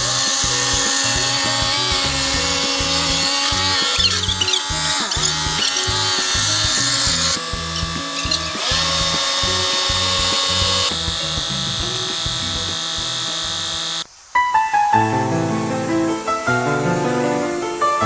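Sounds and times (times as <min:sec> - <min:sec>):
power tool running: 0:00.0 - 0:14.1
background music with steady beat: 0:00.0 - 0:18.0.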